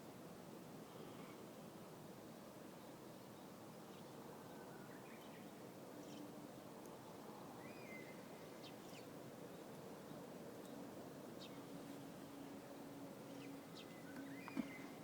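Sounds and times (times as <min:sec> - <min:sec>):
background hiss: 0:00.0 - 0:15.0
small birds chirping: 0:13.3 - 0:15.0.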